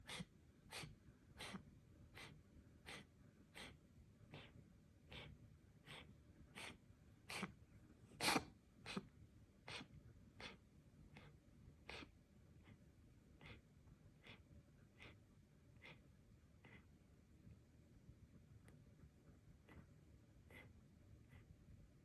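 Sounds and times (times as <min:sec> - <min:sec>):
cat coughing: 0:08.2 - 0:09.1.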